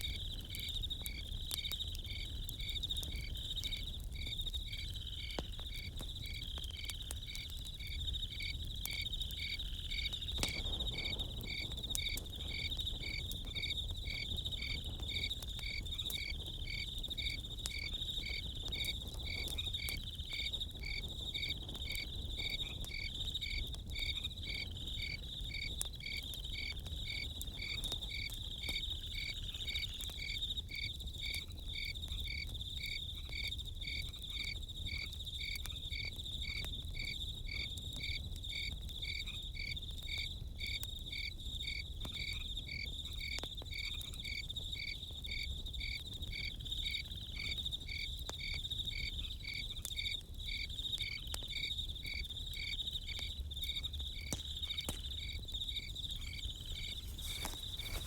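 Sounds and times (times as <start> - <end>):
campfire popping and crackling: 0.0 - 58.0
crickets chirping: 0.0 - 58.0
high insect trill: 47.9 - 58.0.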